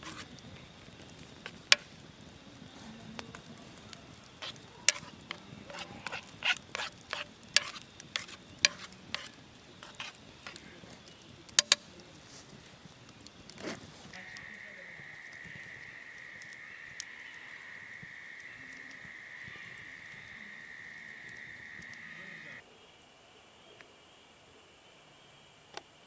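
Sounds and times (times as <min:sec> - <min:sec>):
campfire crackles and pops: 0:00.0 - 0:22.6
faint hiss: 0:00.0 - 0:26.0.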